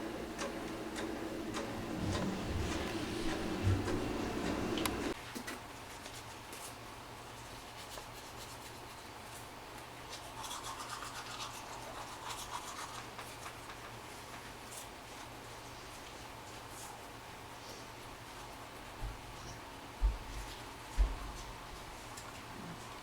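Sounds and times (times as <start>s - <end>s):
faint rubbing and rustling: 1.5s - 5.2s.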